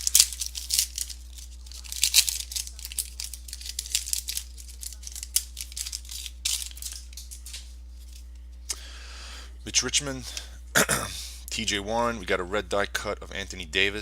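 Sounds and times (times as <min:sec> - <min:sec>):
card pack wrapper crinkling: 0:00.0 - 0:08.2
low electrical hum: 0:00.0 - 0:14.0.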